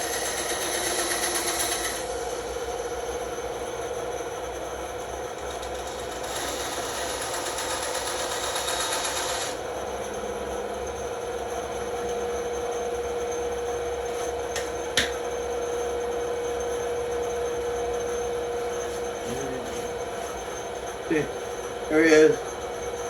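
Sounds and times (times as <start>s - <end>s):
small power tool humming: 0.0s - 3.3s, 5.3s - 9.9s
wood rasping against tool: 5.5s - 9.6s.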